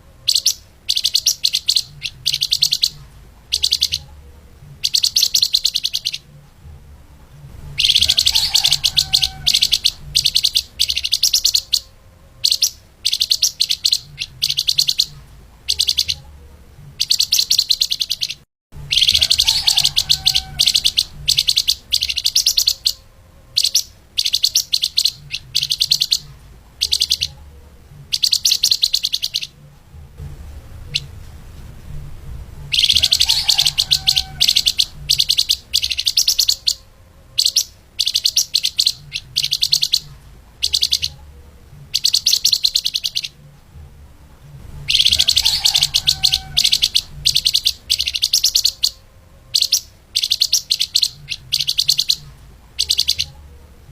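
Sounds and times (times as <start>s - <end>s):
faint low hum: 0.0s - 53.9s
songbird chirps and trills: 0.0s - 53.9s.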